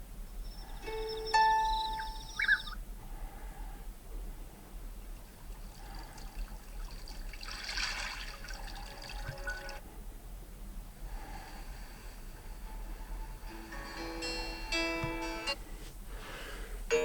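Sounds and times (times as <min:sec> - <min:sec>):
water trickling alarm tone: 0:00.4 - 0:02.8, 0:05.2 - 0:09.8.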